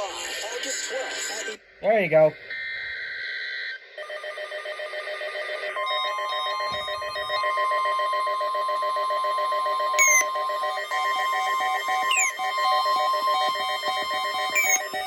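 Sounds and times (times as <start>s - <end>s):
data burst: 10.0s - 10.3s, 10.9s - 15.0s
pulsing electronic alert tone: 10.0s - 15.0s.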